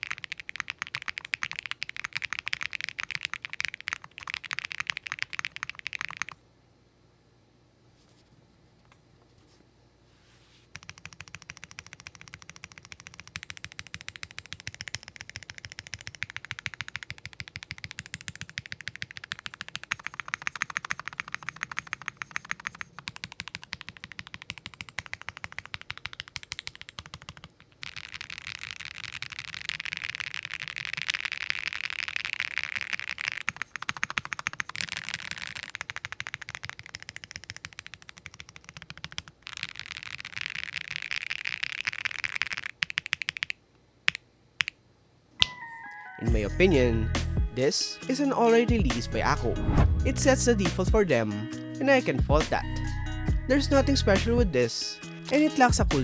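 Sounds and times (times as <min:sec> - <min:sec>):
fast keyboard typing: 0:00.0 - 0:06.4, 0:10.7 - 0:44.7.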